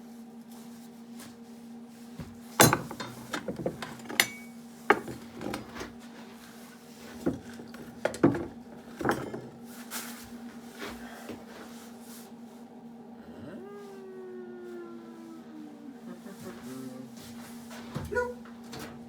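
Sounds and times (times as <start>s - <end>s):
steady low hum: 2.3s - 19.0s
metal ringing: 2.6s - 3.4s, 4.2s - 5.2s
metal tools clanking and scraping: 2.6s - 6.0s, 7.1s - 9.6s.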